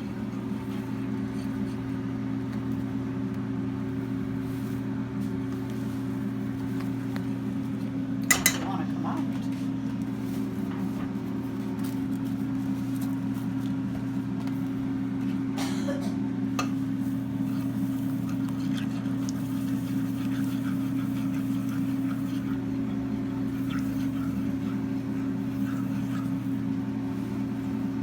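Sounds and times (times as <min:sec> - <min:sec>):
mixer beaters knocking bowl: 0:08.3 - 0:09.2.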